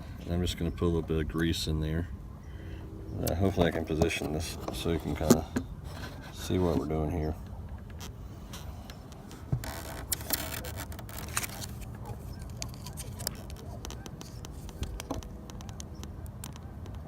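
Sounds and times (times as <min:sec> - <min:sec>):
small sharp clicks and taps: 0:12.5 - 0:17.0.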